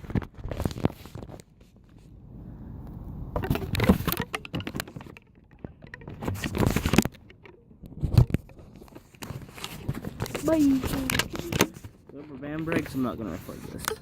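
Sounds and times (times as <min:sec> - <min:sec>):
phone microphone handling noise: 0:02.8 - 0:14.0.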